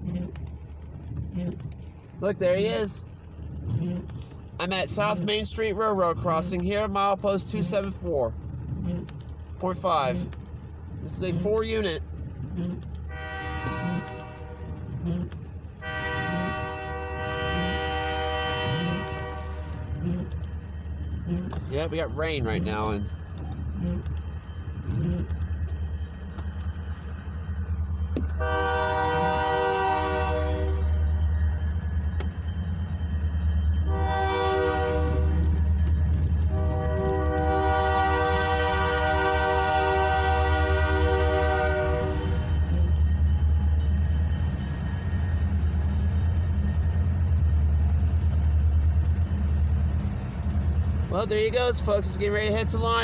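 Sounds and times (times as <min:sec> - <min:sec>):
diesel engines rumbling: 0:00.0 - 0:53.0
locomotive air horn: 0:13.0 - 0:20.4, 0:28.3 - 0:31.0, 0:33.8 - 0:35.5, 0:36.5 - 0:42.8.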